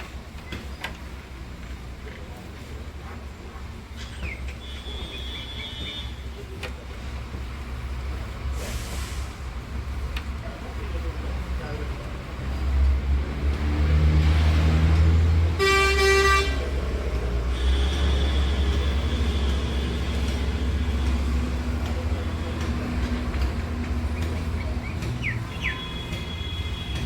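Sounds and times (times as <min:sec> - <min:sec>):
engine rumbling: 0:00.0 - 0:27.0
vehicle horn blast: 0:15.6 - 0:16.7, 0:17.5 - 0:21.1, 0:25.7 - 0:27.0.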